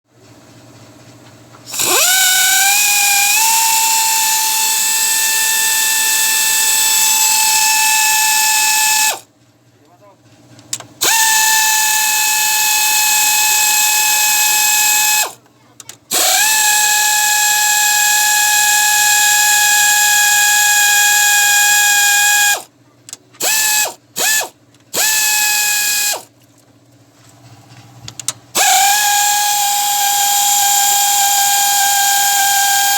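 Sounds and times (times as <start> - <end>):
power tool whining: 1.7 - 9.2, 11.0 - 15.4, 16.1 - 22.7, 23.4 - 26.3, 28.5 - 32.9.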